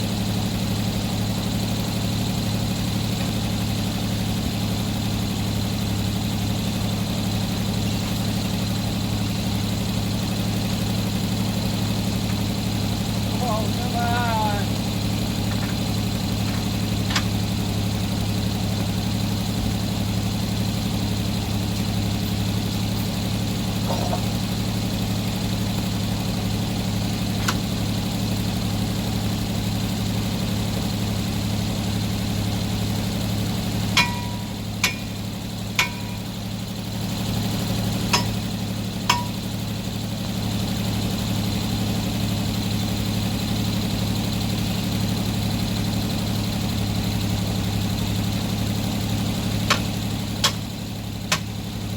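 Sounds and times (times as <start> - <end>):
engine idling: 0.0 - 51.9
sharp metallic clanks: 33.9 - 36.4, 38.0 - 39.6.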